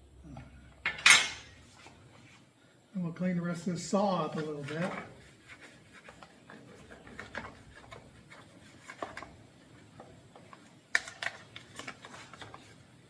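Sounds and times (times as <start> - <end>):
clicks taps and rubbing: 4.3 - 12.7.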